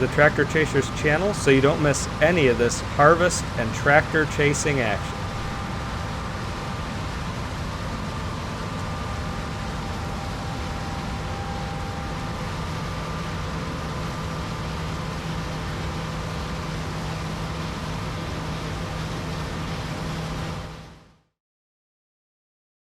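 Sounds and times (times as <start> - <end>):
diesel engine droning: 0.0 - 14.2.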